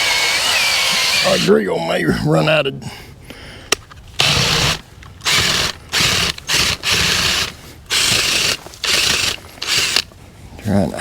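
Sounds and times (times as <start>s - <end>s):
drill clutch ratcheting: 0.0s - 1.5s, 4.2s - 10.1s
drill driving auger bit: 0.0s - 1.5s, 4.2s - 10.1s.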